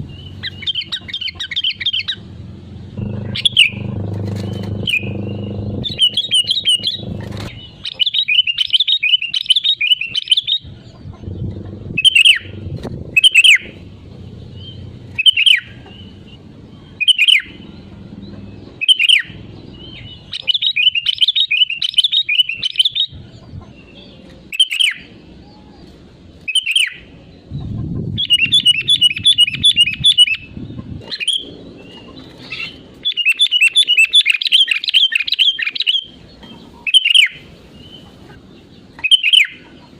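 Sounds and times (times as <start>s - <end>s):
low rumble: 0.0s - 7.8s, 10.6s - 20.3s
bulbul singing chattering notes: 0.0s - 23.4s
bird call notes sliding downward: 3.0s - 10.6s.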